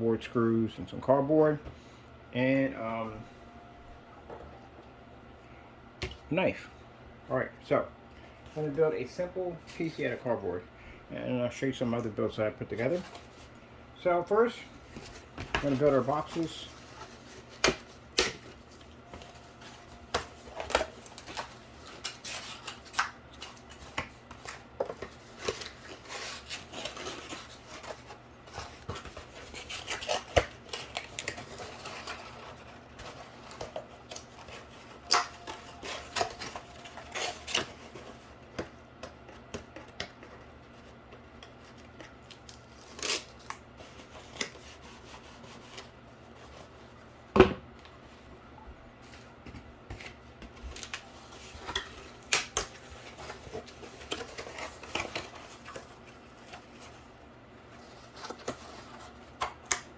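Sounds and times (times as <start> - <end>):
cardboard being handled: 14.7 - 42.1.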